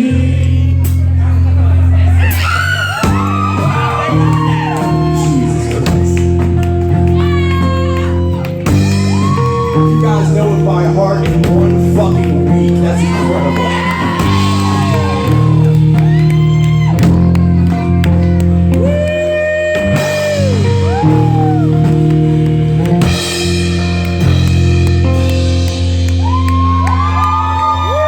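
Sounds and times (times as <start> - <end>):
drums: 0.0 - 28.0
live rock band playing: 0.7 - 28.0
electric guitar lead notes: 3.1 - 28.0.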